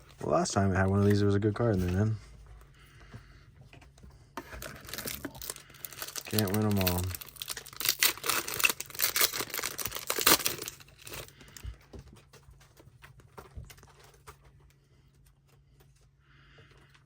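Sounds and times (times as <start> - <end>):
cards rustling and clicking: 3.8 - 16.0
foil wrapper tearing and crinkling: 4.6 - 11.3.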